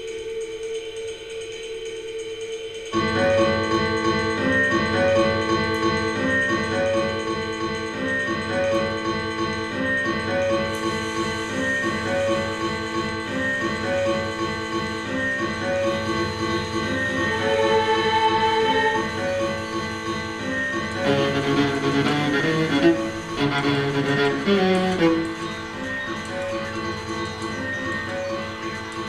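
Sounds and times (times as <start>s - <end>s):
live ensemble music: 21.0s - 25.8s.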